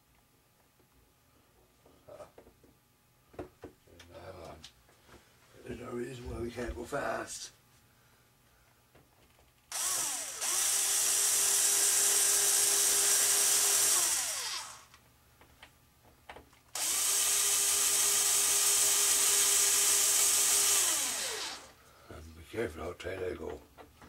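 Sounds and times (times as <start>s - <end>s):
small power drill whining: 9.7s - 15.0s, 16.8s - 21.8s.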